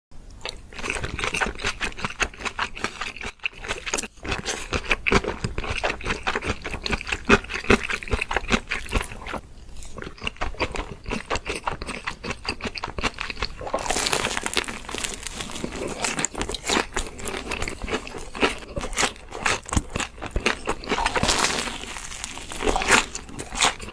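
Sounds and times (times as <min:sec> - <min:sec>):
chewing crunchy food: 0:00.3 - 0:23.9
rustling crinkly noise: 0:13.6 - 0:18.8, 0:20.9 - 0:23.9.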